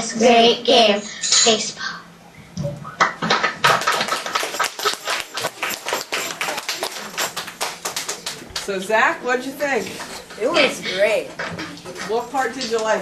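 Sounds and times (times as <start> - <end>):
children clapping: 3.0 - 8.7.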